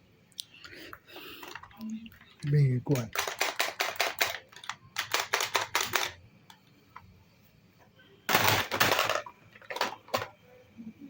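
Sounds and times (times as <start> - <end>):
plastic toy guns clattering: 2.5 - 6.2, 8.3 - 10.4
plastic toy guns clicking: 2.9 - 6.2.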